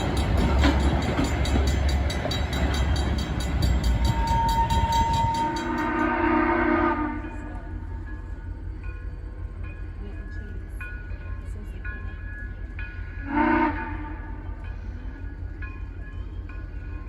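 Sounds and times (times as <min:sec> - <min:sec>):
train wheels clicking: 0:00.0 - 0:06.5
train rumbling past: 0:00.0 - 0:17.0
train horn: 0:03.8 - 0:07.8, 0:13.2 - 0:14.6.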